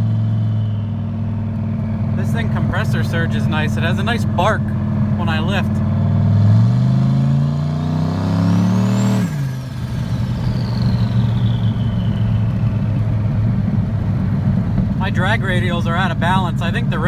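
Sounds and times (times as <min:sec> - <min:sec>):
turbo whine: 0:00.0 - 0:06.2, 0:07.0 - 0:17.0
truck engine accelerating: 0:00.0 - 0:17.0.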